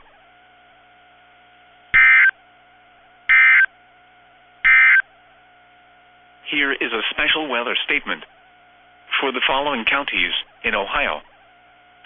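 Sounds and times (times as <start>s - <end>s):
faint radio hum: 0.0s - 12.0s
buzzy digital tone bursts: 2.0s - 2.4s, 3.3s - 3.7s, 4.7s - 5.0s, 6.4s - 12.0s.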